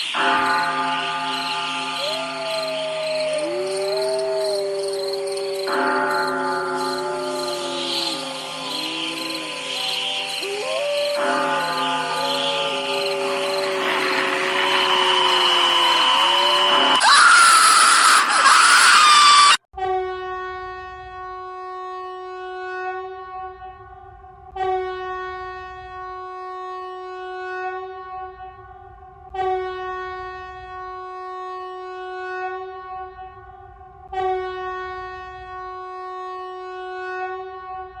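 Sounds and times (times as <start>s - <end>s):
buzzy horn-like alarm tone: 0.0s - 17.0s, 34.2s - 38.0s.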